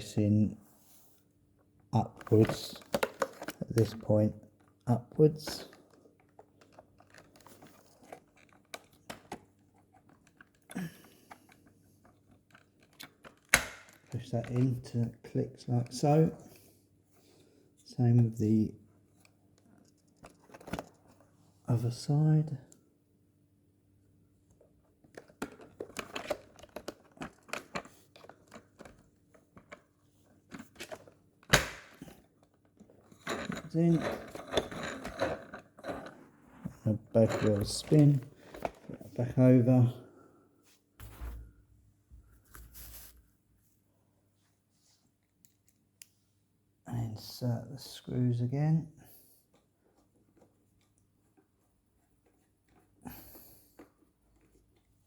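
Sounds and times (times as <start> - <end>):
plastic scrape: 30.5 - 39.2.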